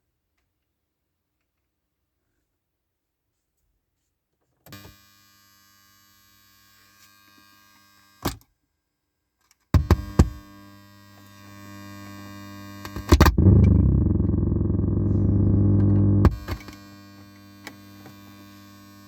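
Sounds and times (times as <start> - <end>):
electrical buzz through speakers: 10.1 - 19.0.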